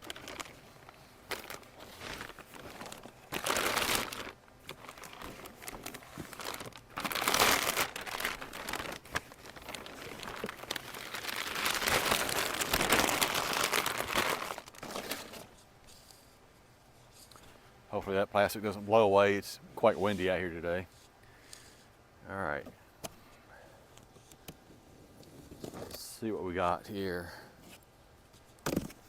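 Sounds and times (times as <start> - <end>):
plastic shrink wrap crinkling: 0.0 - 15.6.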